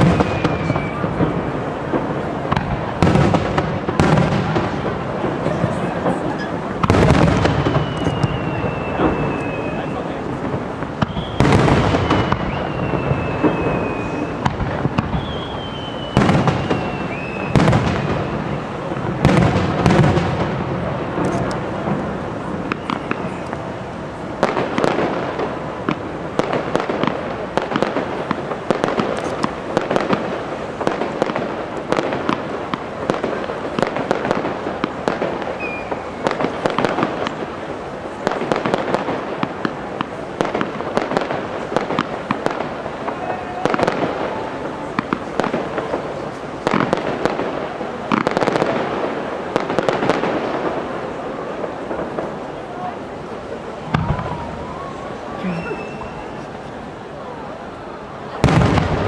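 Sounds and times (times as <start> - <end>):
falling firework whistle: 0.0 - 1.6, 6.2 - 20.4, 22.4 - 23.7, 35.4 - 37.4, 53.8 - 56.7
rapid firework crackling: 0.0 - 59.0
firework shell bursts: 2.5 - 18.4.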